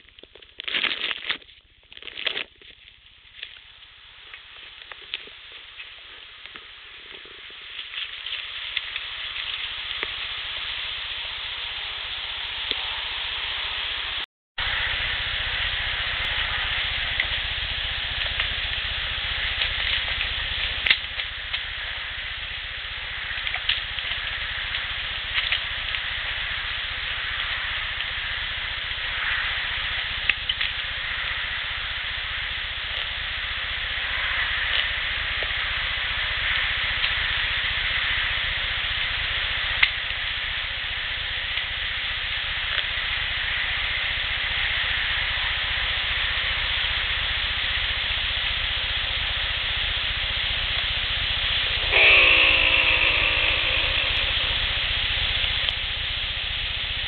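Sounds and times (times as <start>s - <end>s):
background hiss: 0.0s - 57.0s
drawn-out falling call: 50.8s - 55.7s
faint clicks: 50.8s - 55.8s.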